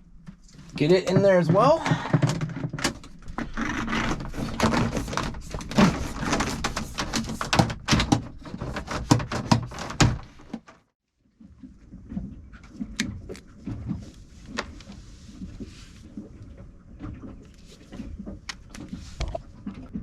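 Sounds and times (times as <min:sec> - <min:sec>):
cable knocking and scraping: 0:00.3 - 0:10.9.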